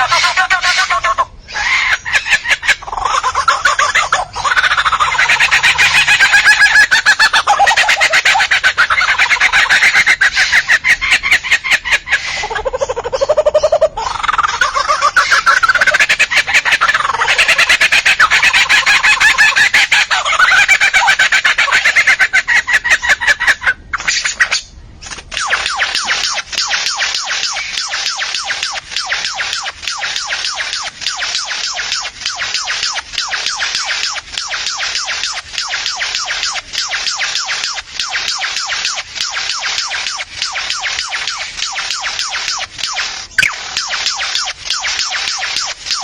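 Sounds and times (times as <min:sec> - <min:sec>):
bird sliding call: 0:00.0 - 0:12.7, 0:24.0 - 0:46.0
bird singing rapid notes: 0:00.0 - 0:22.2, 0:24.0 - 0:46.0.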